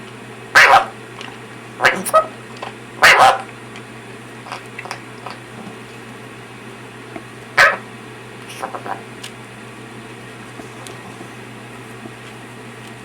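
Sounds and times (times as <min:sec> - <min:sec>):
parrot imitating a cough: 0:00.6 - 0:00.9, 0:01.8 - 0:02.3, 0:03.0 - 0:03.4, 0:07.6 - 0:07.8.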